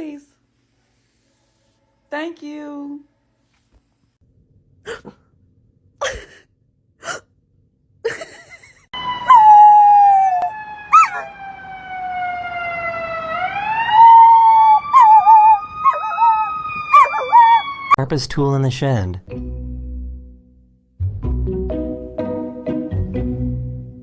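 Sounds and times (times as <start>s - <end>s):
siren wailing: 9.0s - 18.0s.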